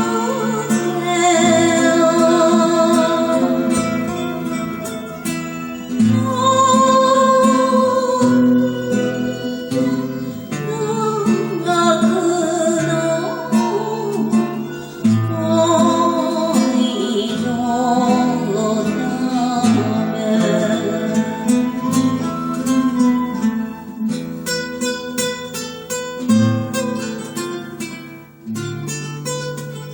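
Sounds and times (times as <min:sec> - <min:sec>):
acoustic guitar melody: 0:00.0 - 0:29.9.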